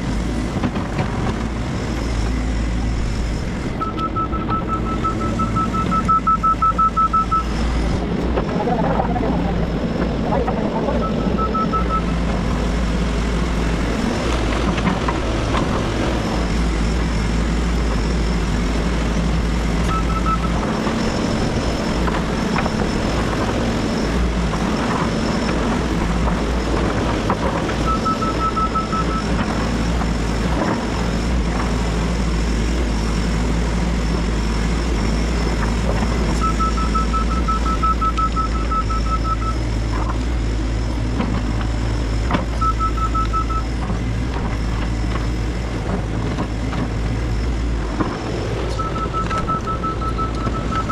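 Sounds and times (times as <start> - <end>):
excavator diesel engine running: 0.0 - 50.9
rapid beeping alarm: 3.8 - 7.8, 10.9 - 12.3, 19.9 - 22.0, 27.8 - 29.4, 36.4 - 39.7, 42.6 - 43.7, 48.8 - 50.9.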